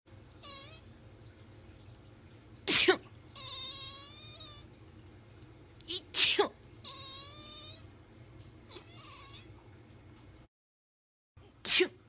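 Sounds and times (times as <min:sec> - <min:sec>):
cat meowing: 0:00.3 - 0:00.9, 0:03.3 - 0:04.7, 0:06.8 - 0:07.9, 0:08.7 - 0:09.6
person sneezing: 0:02.7 - 0:03.1, 0:06.2 - 0:06.6, 0:11.7 - 0:12.0.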